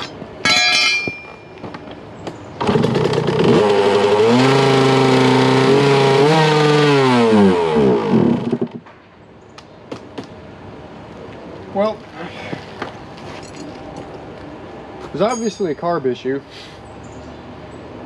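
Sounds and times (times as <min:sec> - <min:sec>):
two-stroke engine starting and revving: 0:02.6 - 0:08.8.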